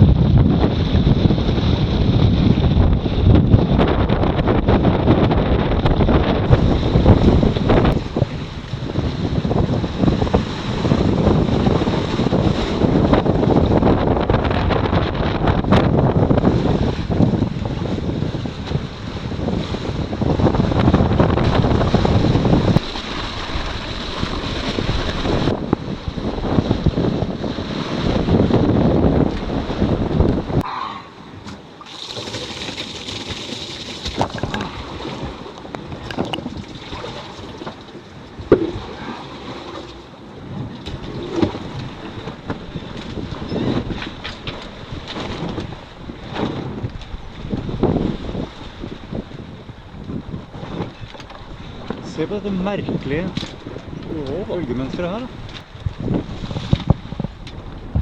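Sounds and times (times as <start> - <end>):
wind buffeting microphone: 0.0 - 58.0
waves rushing: 1.4 - 58.0.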